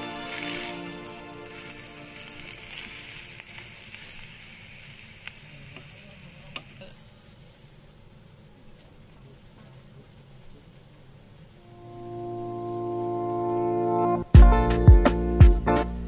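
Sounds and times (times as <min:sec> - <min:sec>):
food sizzling in hot oil: 0:00.0 - 0:07.9.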